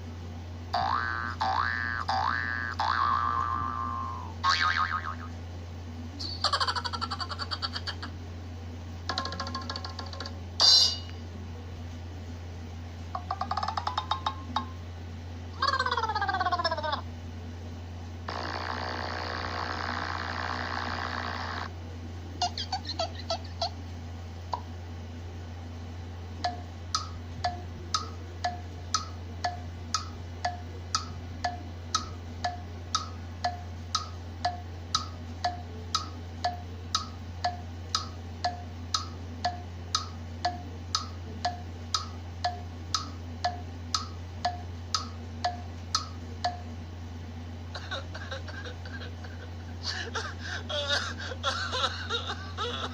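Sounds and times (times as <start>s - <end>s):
low steady hum: 0.0s - 52.9s
buzzy tone: 0.7s - 5.4s, 18.3s - 21.7s.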